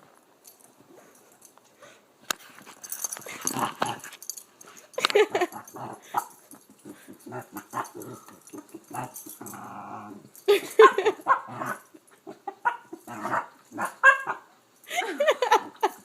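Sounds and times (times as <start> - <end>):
dogs making playful vocal noises: 2.7 - 14.5.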